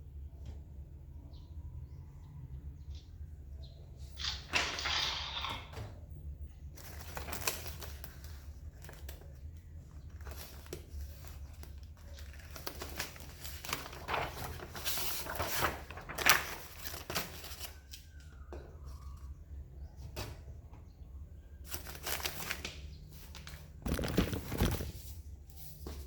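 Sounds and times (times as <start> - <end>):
rustling and clicks of handling: 6.8 - 19.2, 21.7 - 26.0.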